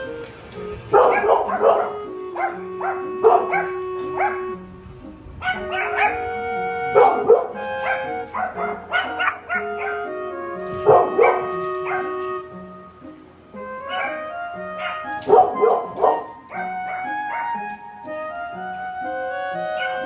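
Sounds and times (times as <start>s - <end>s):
background music: 0.0s - 20.0s
dogs barking: 0.8s - 4.6s, 5.4s - 12.4s, 13.6s - 17.7s, 19.6s - 20.0s.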